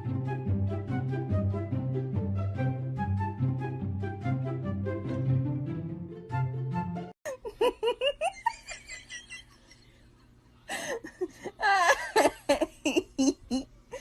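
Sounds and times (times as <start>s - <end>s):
background music: 0.0s - 7.2s
high-pitched laughter: 7.3s - 9.8s, 11.0s - 14.0s.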